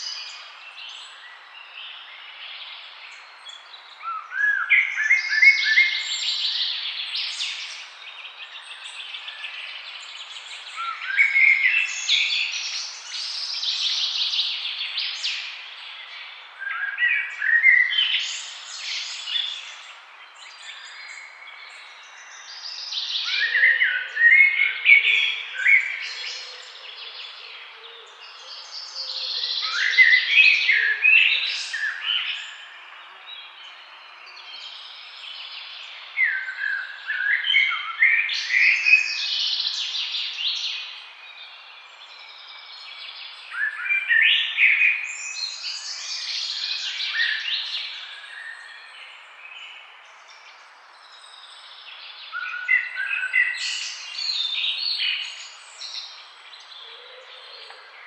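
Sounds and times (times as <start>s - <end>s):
songbirds chirping: 0.0s - 58.0s.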